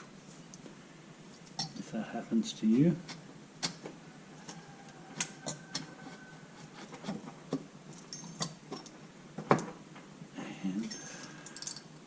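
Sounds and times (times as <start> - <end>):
metal engine parts clicking: 10.9 - 11.9.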